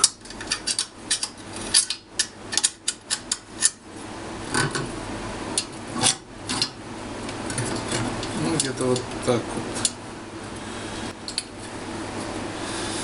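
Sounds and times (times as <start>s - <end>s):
metal parts clicking and clinking: 0.0s - 3.8s.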